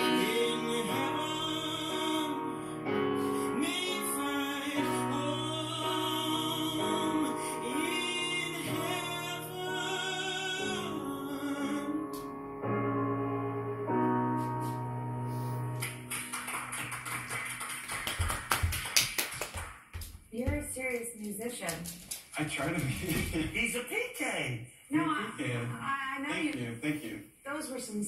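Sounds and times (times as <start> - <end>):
man singing high wordless notes: 0.0 - 12.4
piano chords: 0.0 - 18.8.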